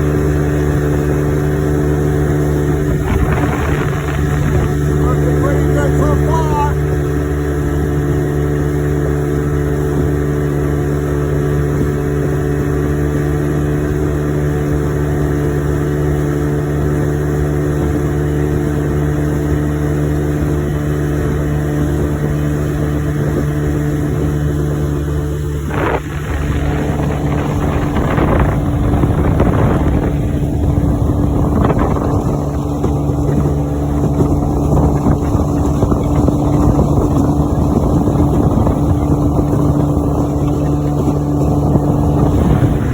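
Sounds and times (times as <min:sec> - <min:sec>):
outboard motor running: 0:00.0 - 0:42.9
wind and water rushing: 0:00.0 - 0:42.9.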